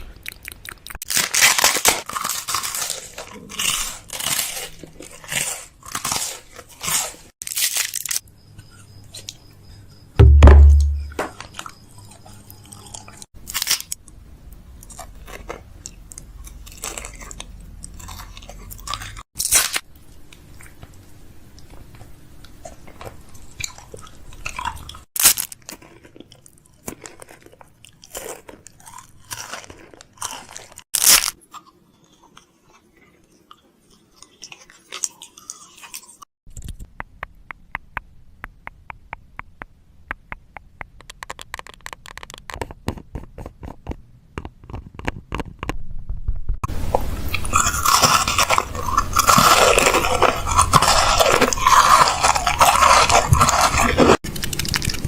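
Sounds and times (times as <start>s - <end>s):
close crunching and clicking: 0.0s - 8.2s, 21.6s - 31.7s, 34.2s - 45.8s, 47.3s - 55.0s.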